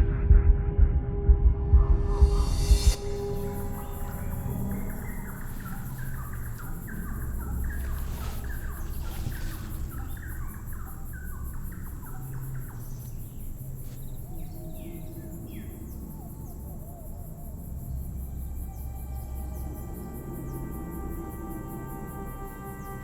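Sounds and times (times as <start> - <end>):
low steady drone: 0.0 - 23.0
insect sounds: 2.4 - 23.0.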